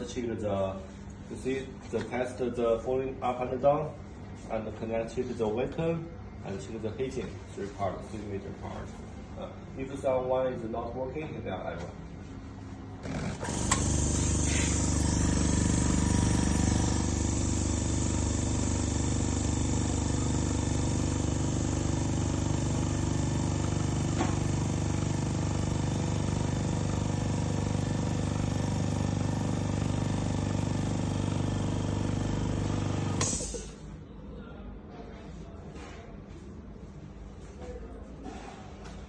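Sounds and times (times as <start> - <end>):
vacuum pump humming: 12.0 - 33.8.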